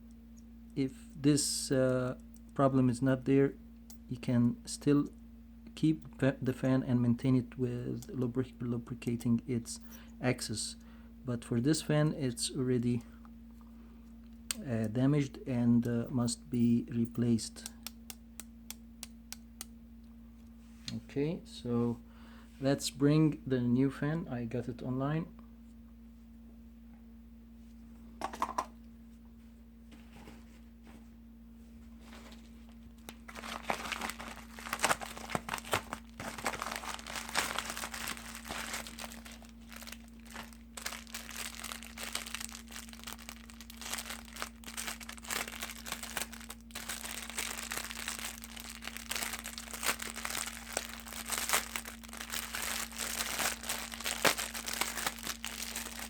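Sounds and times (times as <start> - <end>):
plastic packaging crinkling: 32.0 - 56.0.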